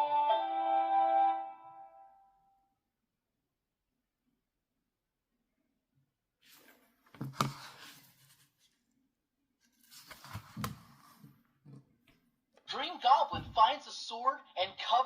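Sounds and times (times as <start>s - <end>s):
rustling and scraping: 6.4s - 8.8s, 9.6s - 11.8s.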